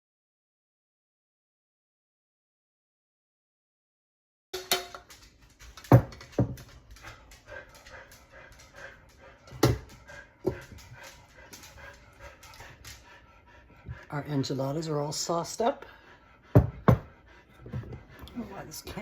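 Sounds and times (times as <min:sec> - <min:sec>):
utensil knocking against pan: 0:04.6 - 0:05.1.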